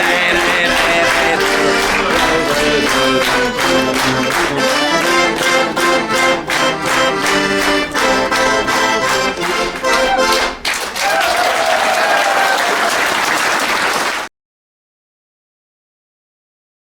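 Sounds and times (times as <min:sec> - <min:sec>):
accordion music with steady beat: 0:00.0 - 0:10.7
audience applause: 0:00.0 - 0:14.3.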